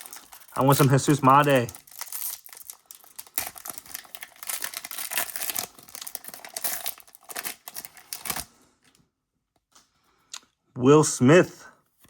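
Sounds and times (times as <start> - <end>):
wrapper crackling and tearing: 0.0 - 8.5.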